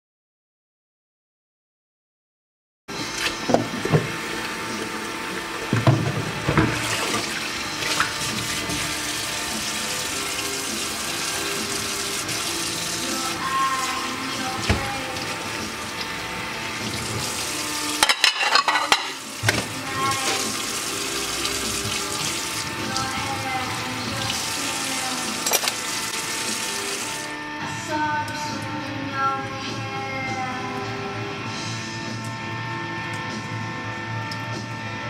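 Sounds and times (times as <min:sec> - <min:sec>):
tap water running into sink: 0:03.2 - 0:27.3.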